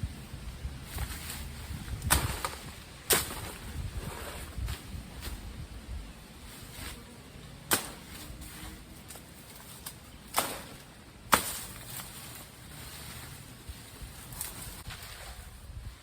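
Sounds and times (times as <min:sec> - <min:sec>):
blade chopping plant stems: 0:00.9 - 0:05.5, 0:07.7 - 0:13.2, 0:14.2 - 0:15.4.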